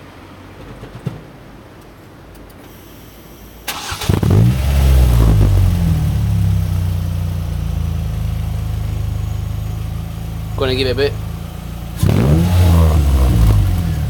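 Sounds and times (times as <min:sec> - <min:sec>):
starter motor cranking: 0:03.7 - 0:04.5
car engine revving and idling: 0:03.7 - 0:14.0.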